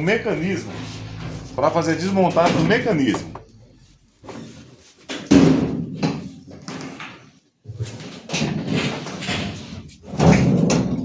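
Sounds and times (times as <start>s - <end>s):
knocking and scraping of metal cabinet: 0.0s - 6.2s.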